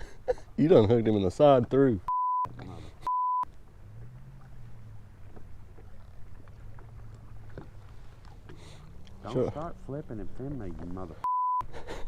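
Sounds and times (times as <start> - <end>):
censor bleep: 2.1 - 3.5, 11.2 - 11.6
boat motor humming: 2.4 - 11.0.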